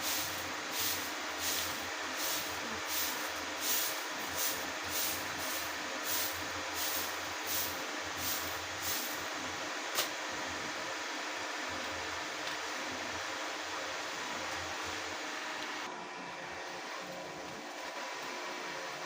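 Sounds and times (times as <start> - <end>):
steady hiss: 0.0 - 10.7.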